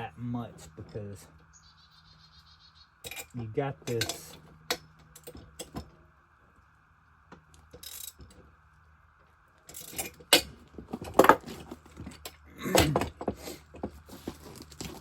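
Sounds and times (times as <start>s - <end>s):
metal clinks and knocks: 3.0s - 6.0s, 7.4s - 8.4s, 9.6s - 15.0s.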